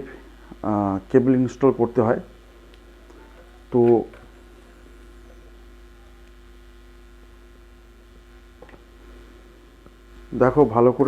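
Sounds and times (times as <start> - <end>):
low electrical hum: 0.0 - 11.0
faint clicks: 2.7 - 3.5.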